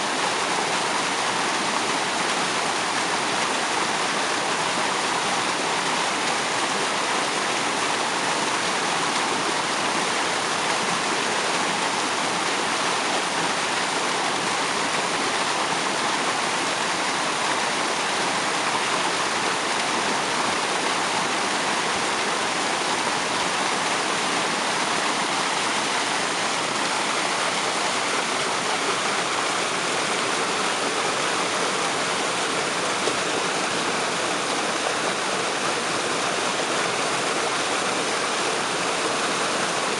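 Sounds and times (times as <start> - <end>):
waterfall roaring: 0.0 - 39.9.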